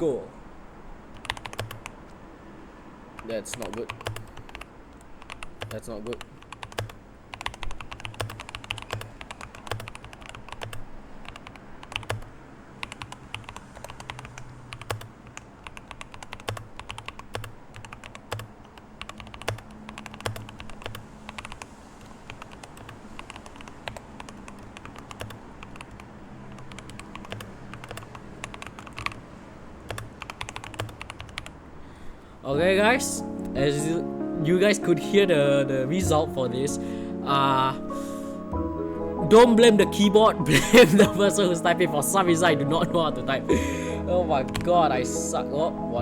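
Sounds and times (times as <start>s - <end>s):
mechanical keyboard typing: 1.1s - 2.0s, 3.2s - 29.2s, 29.9s - 31.6s.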